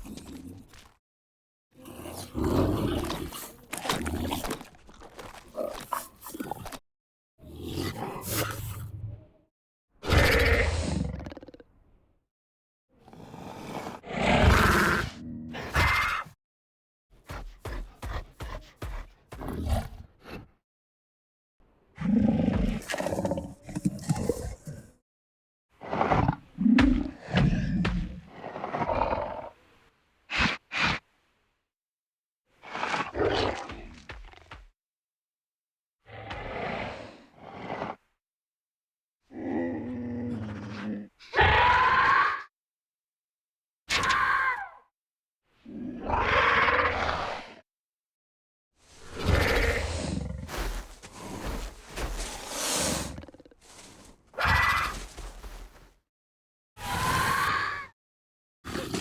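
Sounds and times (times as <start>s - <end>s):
creature growls and snarls: 0.0s - 1.0s, 1.8s - 6.8s, 7.4s - 9.2s, 10.0s - 11.8s, 13.0s - 16.4s, 17.2s - 20.6s, 21.9s - 25.0s, 25.8s - 29.6s, 32.6s - 34.7s, 36.0s - 38.1s, 39.2s - 42.5s, 43.9s - 44.6s, 45.6s - 47.7s, 48.9s - 56.0s, 56.8s - 58.0s, 58.7s - 59.0s
creature grunts: 49.2s - 55.8s.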